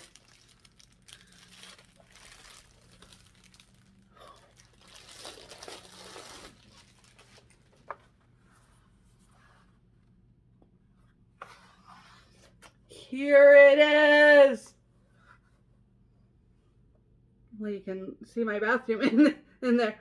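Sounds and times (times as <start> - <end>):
packaging crinkling and tearing: 0.0 - 8.0.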